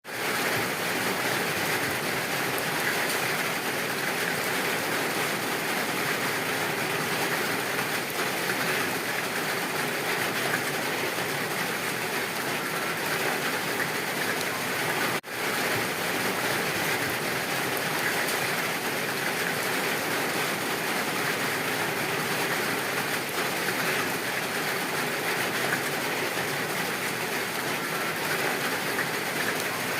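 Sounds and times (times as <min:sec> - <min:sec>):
rain falling in forest: 0:00.1 - 0:29.9.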